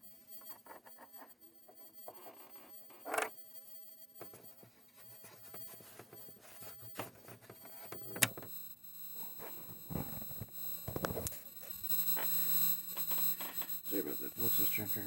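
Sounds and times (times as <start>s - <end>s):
high electronic tones: 8.0s - 15.0s.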